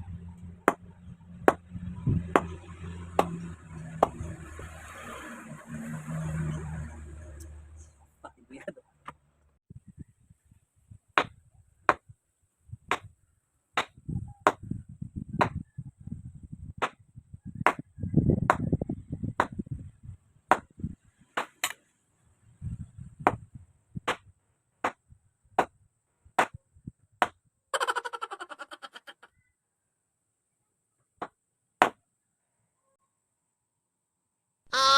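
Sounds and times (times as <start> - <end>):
low knocking and rumbling: 0.0 - 4.5.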